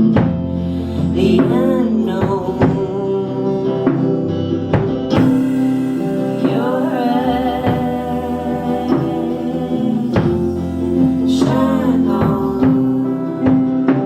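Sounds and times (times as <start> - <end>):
person singing with vibrato: 0.0 - 14.0
rock band playing: 0.0 - 14.0.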